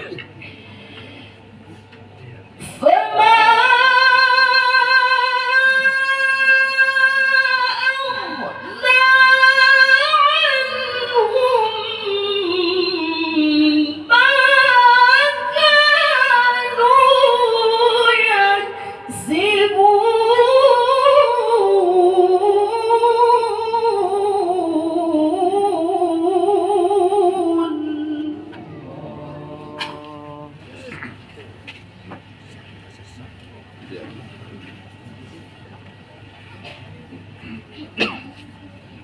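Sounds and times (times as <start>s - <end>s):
person reciting melodically: 2.7s - 31.2s.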